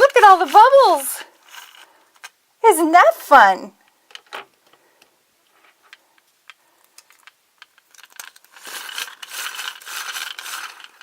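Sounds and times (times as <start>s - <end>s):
plastic mechanism rattling: 1.4s - 2.4s, 5.8s - 11.0s.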